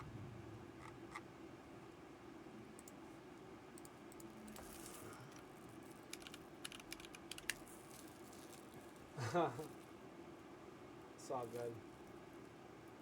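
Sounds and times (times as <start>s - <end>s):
low steady hum: 0.0s - 13.0s
computer keyboard typing: 6.0s - 7.6s.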